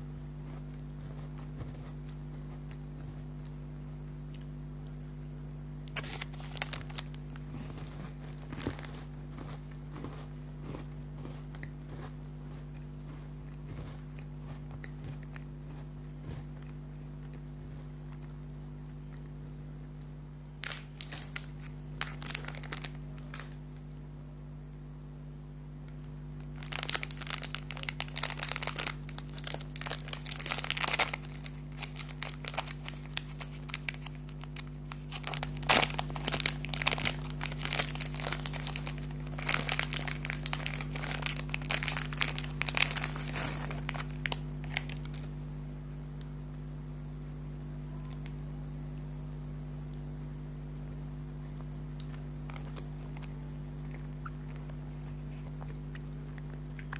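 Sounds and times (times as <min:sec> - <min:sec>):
plastic packaging crinkling and tearing: 0:05.9 - 0:12.1, 0:20.6 - 0:23.6, 0:26.4 - 0:45.4, 0:51.6 - 0:56.9.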